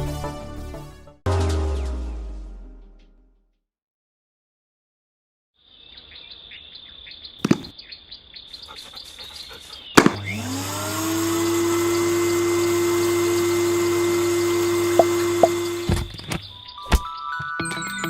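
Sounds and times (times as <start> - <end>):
vacuum cleaner motor running: 10.0 - 16.2
vacuum cleaner clicks: 14.8 - 16.1.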